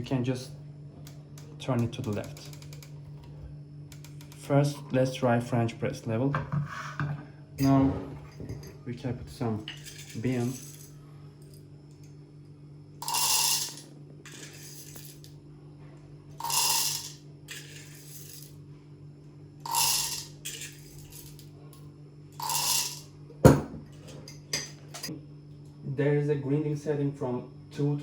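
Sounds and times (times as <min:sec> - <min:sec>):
coffee beans rattling on plastic: 0:16.4 - 0:18.4, 0:19.7 - 0:21.4, 0:22.4 - 0:23.1.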